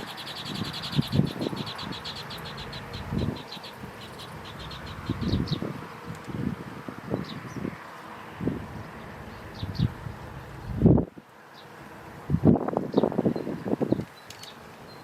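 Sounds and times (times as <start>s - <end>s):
small bird chirping: 0.0s - 5.7s, 8.9s - 10.8s.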